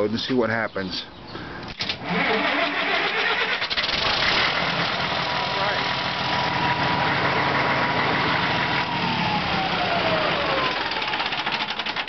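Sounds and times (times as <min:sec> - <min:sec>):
generator engine running: 0:02.0 - 0:12.0.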